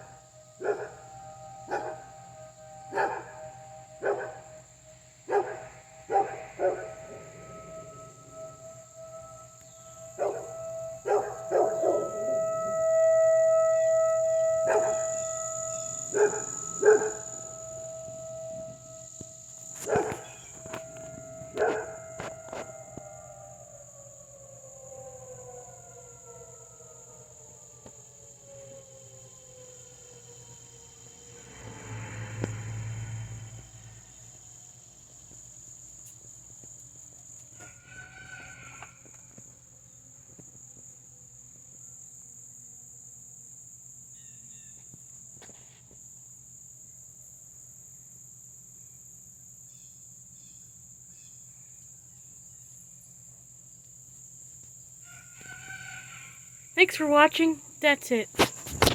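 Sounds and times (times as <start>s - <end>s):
faint tone: 0.0s - 23.4s, 31.3s - 34.4s
outdoor warning siren steady tone: 0.0s - 49.6s, 50.2s - 58.9s
insects chorus: 0.0s - 58.9s
dog barking: 0.6s - 1.1s, 1.7s - 2.2s, 2.9s - 4.6s, 5.3s - 8.1s, 10.2s - 12.2s, 14.7s - 15.2s, 16.1s - 17.4s, 19.8s - 20.8s, 21.5s - 22.3s.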